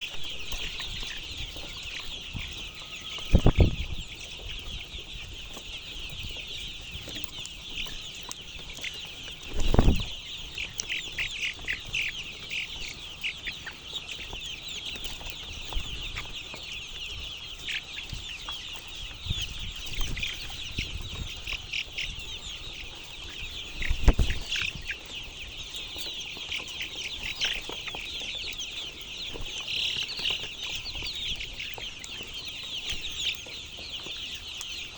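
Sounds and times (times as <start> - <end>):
chickens calling: 0.0 - 34.9.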